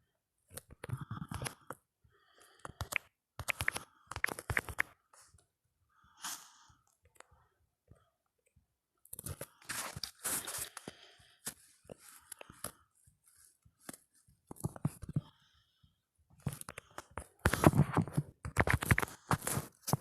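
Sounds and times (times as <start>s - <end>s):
phone keyboard typing taps: 2.7s - 4.9s.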